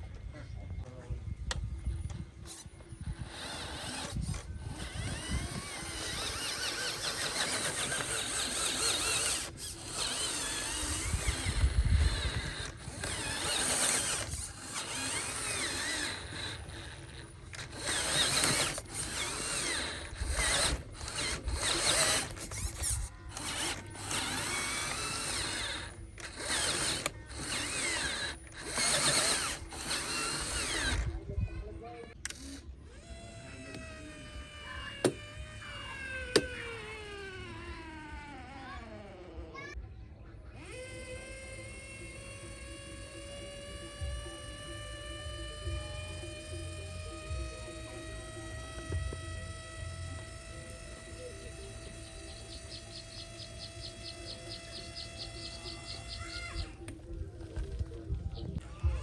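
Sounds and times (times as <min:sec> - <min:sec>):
electric motors whirring and ratcheting: 0:00.0 - 0:39.8, 0:40.4 - 0:59.0
wavering motor whine: 0:00.0 - 0:39.8, 0:40.4 - 0:59.0.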